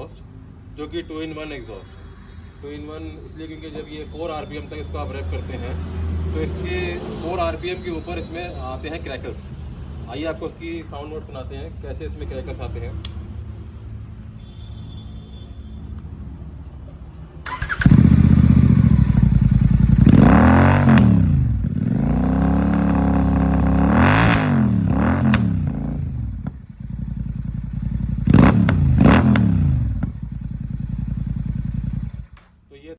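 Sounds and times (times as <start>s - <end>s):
exhaust crackling: 17.4s - 32.4s
motorcycle engine revving: 17.4s - 32.4s.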